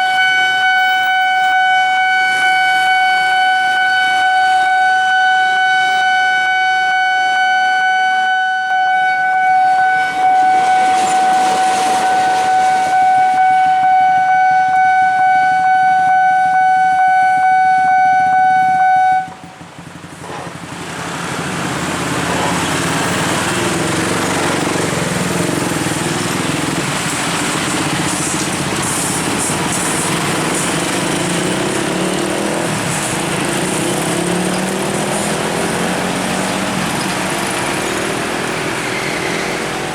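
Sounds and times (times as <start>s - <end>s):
train horn blast: 0.0s - 19.6s
train passing rushing noise: 5.4s - 17.0s, 17.8s - 39.9s.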